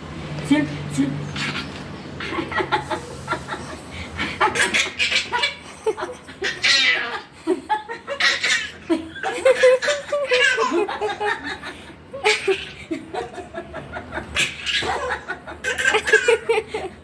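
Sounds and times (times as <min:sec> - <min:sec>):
baby laughing: 0:04.2 - 0:11.6, 0:12.2 - 0:13.4, 0:14.2 - 0:17.0.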